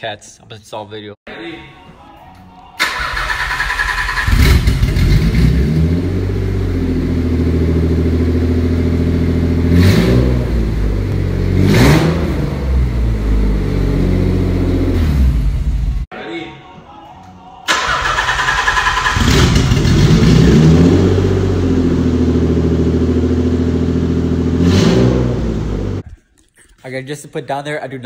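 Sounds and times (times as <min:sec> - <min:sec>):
car engine running and revving: 0:04.3 - 0:16.0, 0:19.2 - 0:26.0.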